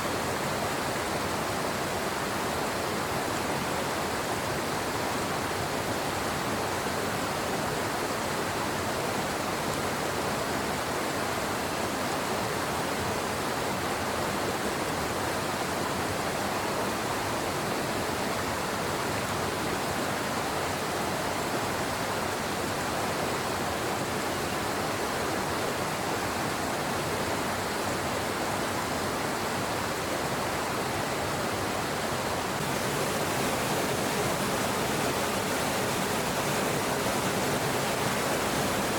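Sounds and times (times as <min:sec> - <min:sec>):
water rushing in a stream: 0:00.0 - 0:38.9.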